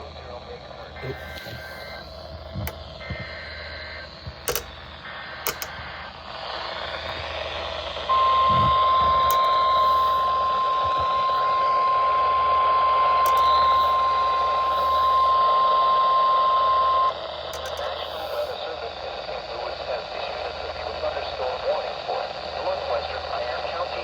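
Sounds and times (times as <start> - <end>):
warbling data bursts: 0.0 - 18.6
radio static: 0.0 - 24.0
clicks: 4.2 - 4.7, 5.4 - 5.9, 9.0 - 9.8, 13.2 - 13.8, 17.6 - 18.0.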